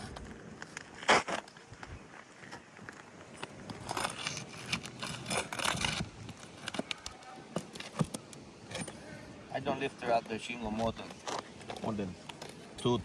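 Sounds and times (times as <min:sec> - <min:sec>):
pry bar scraping roof shingles: 0:03.4 - 0:09.2, 0:10.0 - 0:12.8.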